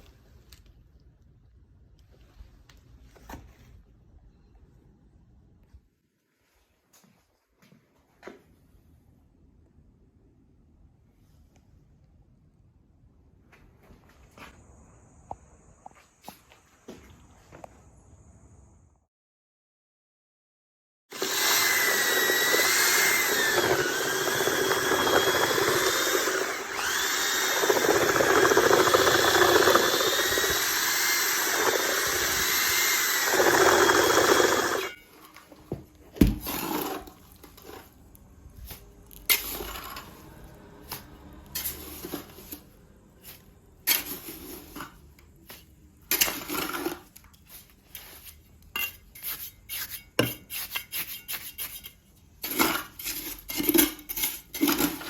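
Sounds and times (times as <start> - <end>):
power tool whining: 21.1 - 35.0
hand tools clicking and scraping: 21.1 - 35.6, 38.6 - 55.0.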